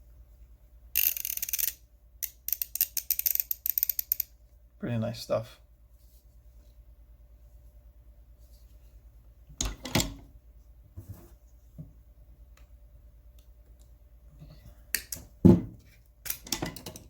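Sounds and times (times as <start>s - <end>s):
ratchet tools clicking: 1.0s - 4.3s.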